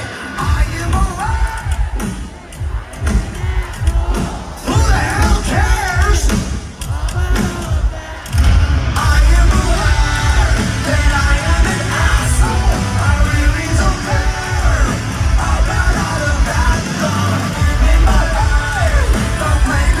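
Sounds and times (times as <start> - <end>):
live rock band playing: 8.4 - 20.0.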